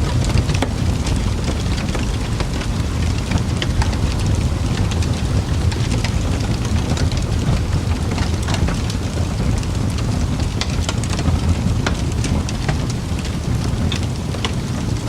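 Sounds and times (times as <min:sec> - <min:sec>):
fire crackles and pops: 0:00.0 - 0:15.0
fireplace burning: 0:00.0 - 0:15.0.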